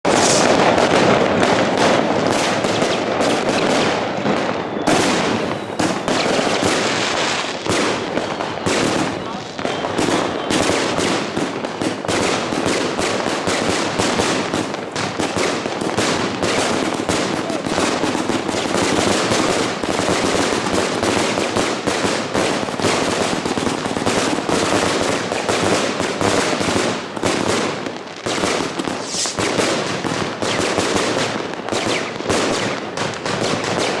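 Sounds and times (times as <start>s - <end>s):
fireworks cake firing: 0.0s - 34.0s.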